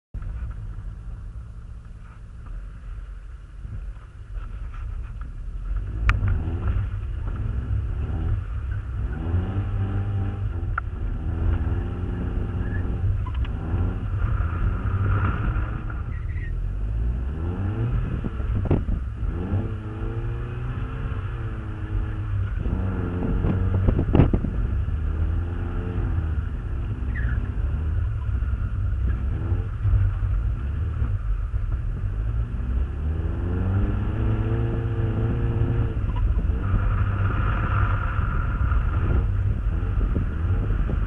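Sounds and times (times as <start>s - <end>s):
car engine revving: 3.6s - 41.0s.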